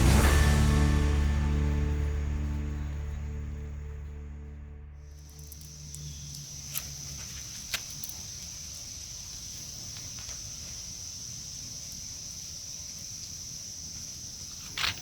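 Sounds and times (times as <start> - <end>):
crickets trilling: 5.1 - 15.0.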